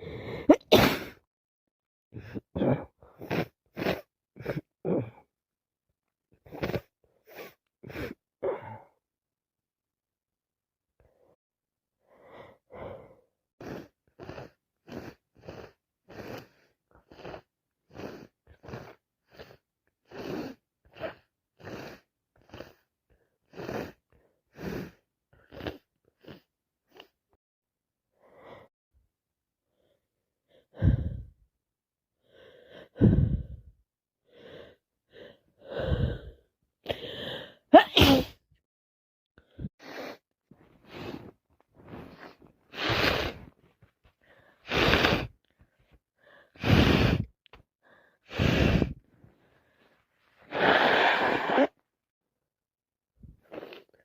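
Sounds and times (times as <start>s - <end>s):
woman sneezing: 0.5s - 1.2s, 37.8s - 38.4s
woman breathing quickly: 30.6s - 31.4s, 32.2s - 33.7s, 34.3s - 37.6s, 39.4s - 50.6s.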